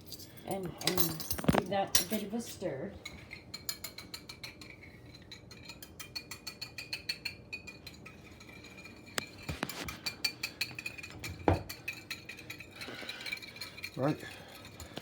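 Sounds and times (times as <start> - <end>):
whisk clinking against dish: 3.0 - 15.0.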